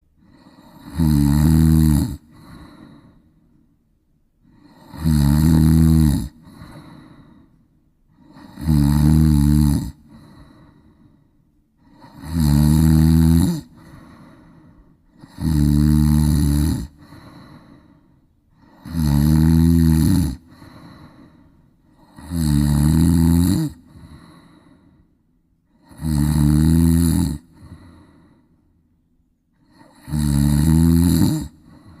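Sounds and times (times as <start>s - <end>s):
cat snoring: 0.2s - 3.3s, 4.5s - 7.4s, 8.1s - 11.1s, 11.8s - 18.0s, 18.6s - 24.8s, 25.7s - 28.4s, 29.6s - 32.0s
soft breath: 2.2s - 4.9s, 6.3s - 8.6s, 10.0s - 12.2s, 13.6s - 15.3s, 16.8s - 18.9s, 20.4s - 22.2s, 23.8s - 25.9s, 27.4s - 28.8s, 31.5s - 32.0s.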